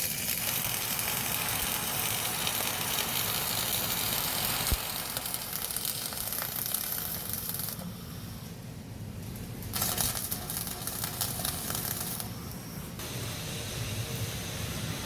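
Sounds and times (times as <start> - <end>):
welding arc crackling and sizzling: 0.0 - 8.1, 9.3 - 15.0.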